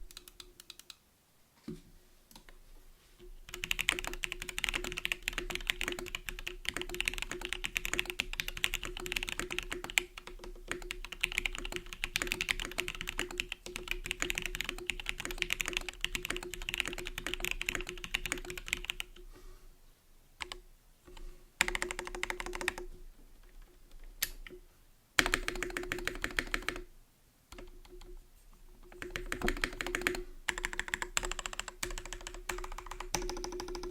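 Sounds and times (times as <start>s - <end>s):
mechanical keyboard typing: 0.0s - 1.0s, 3.5s - 19.2s, 21.6s - 22.9s, 25.2s - 26.9s, 28.9s - 33.9s.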